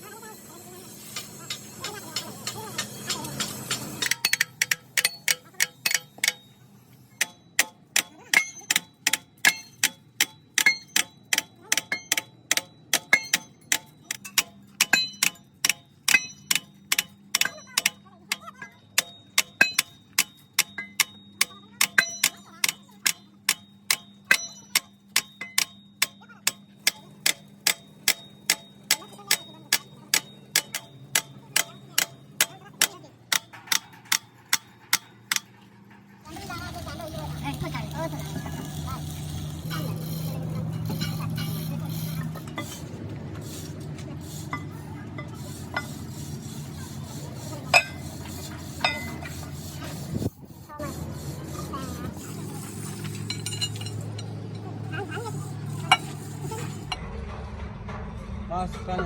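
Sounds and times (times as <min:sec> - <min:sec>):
hammer striking metal: 0:00.9 - 0:42.9, 0:44.5 - 0:50.3, 0:52.2 - 0:57.2.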